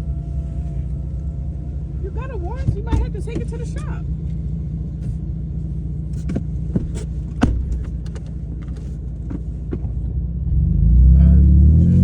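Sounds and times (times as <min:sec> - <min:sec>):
engine and road rumble: 0:00.0 - 0:12.0.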